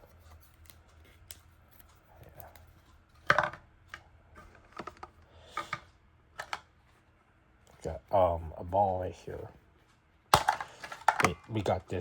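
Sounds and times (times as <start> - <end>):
hard plastic clattering: 10.3 - 11.7
plastic toys rummaged through: 10.4 - 11.6.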